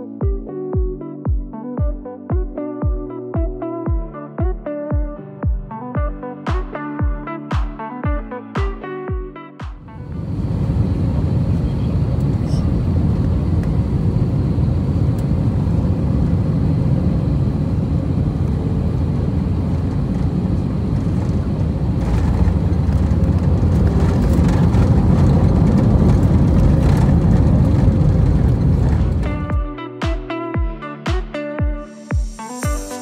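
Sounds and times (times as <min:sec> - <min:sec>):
airplane cabin rumble: 0:09.8 - 0:29.6.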